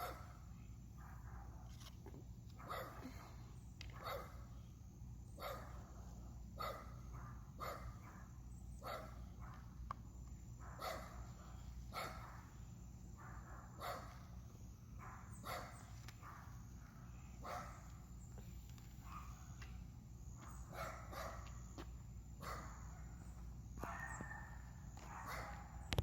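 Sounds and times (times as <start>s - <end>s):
dog barking: 0.0s - 0.3s, 2.6s - 3.2s, 3.9s - 4.4s, 5.4s - 5.8s, 6.6s - 9.6s, 10.6s - 11.3s, 11.9s - 12.5s, 13.2s - 14.2s, 15.0s - 16.6s, 17.4s - 17.8s, 20.7s - 21.5s, 22.4s - 23.1s, 23.8s - 25.8s.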